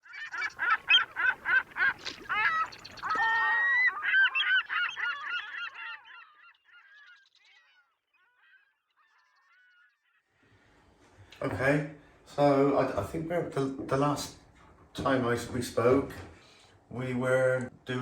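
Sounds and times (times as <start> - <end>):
geese honking: 0.0 - 11.4.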